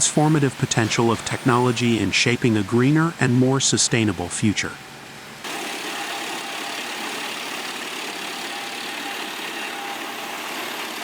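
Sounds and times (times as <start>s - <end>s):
industrial wood crusher running: 5.4s - 11.0s.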